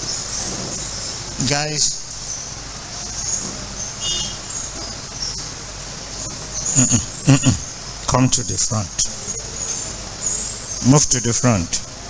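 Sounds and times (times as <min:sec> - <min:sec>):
background hiss: 0:00.0 - 0:12.0
crickets chirping: 0:00.0 - 0:12.0
man speaking: 0:06.8 - 0:09.2, 0:10.8 - 0:11.9.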